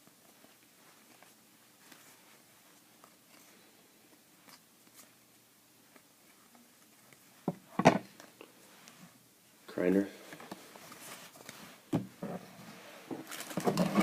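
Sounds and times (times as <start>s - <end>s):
cards and wrapper rustling: 13.2s - 14.0s.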